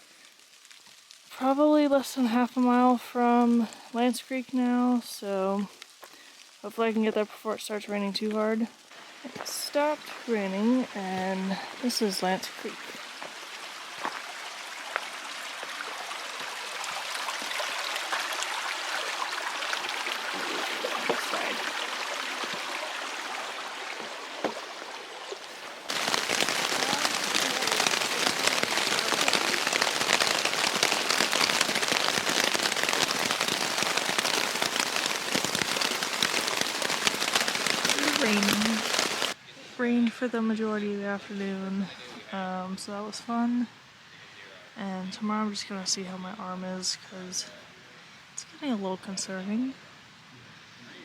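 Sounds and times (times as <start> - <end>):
heavy rain: 0.0 - 39.4
creek water running: 0.0 - 40.0
water dripping: 5.5 - 39.4.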